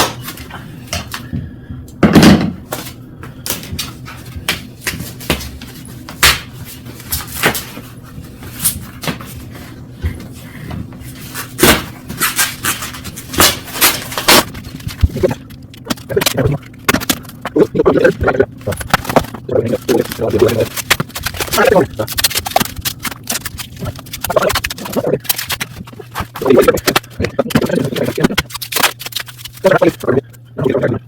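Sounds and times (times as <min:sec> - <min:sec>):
packaging being handled: 0:11.4 - 0:17.6, 0:18.3 - 0:30.3.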